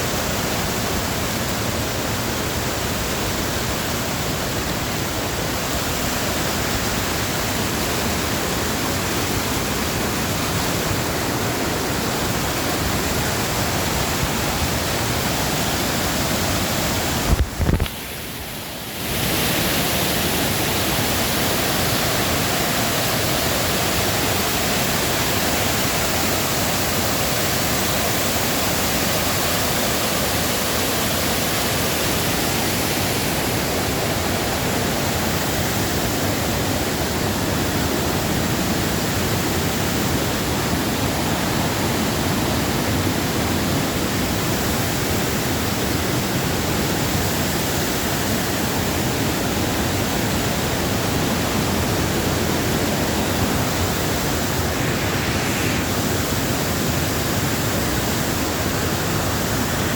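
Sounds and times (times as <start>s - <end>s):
steady rushing noise: 8.7s - 23.1s, 50.2s - 59.9s.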